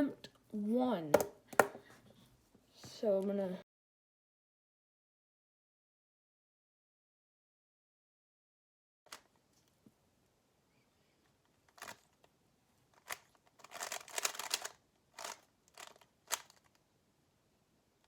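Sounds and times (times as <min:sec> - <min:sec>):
speed cube plastic clacks: 0:11.7 - 0:12.3, 0:13.0 - 0:16.8.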